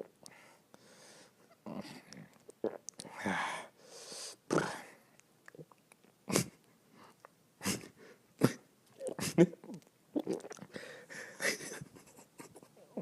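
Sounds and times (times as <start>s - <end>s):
person belching: 8.4s - 10.6s
person gulping air: 8.4s - 10.8s.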